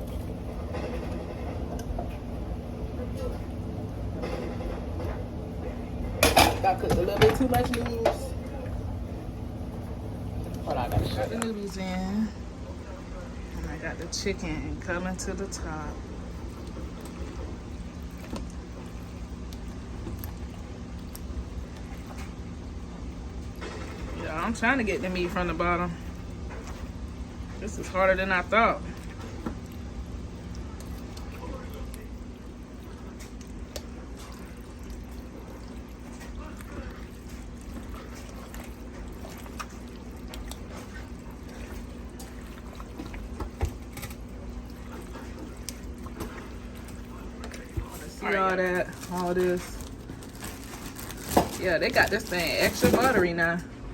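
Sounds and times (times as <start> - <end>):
slow cooker low hum: 0.0 - 53.9
spoon stirring thick pasta: 27.6 - 50.9.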